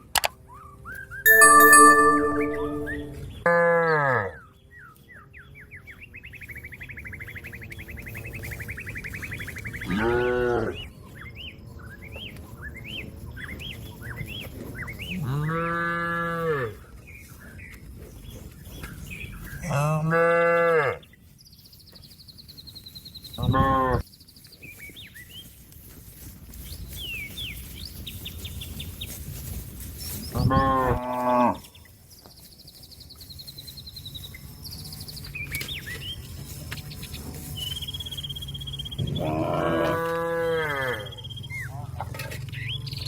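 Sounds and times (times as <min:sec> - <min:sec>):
birds chirping quietly: 0:04.2 - 0:43.0
cow mooing: 0:39.2 - 0:41.1.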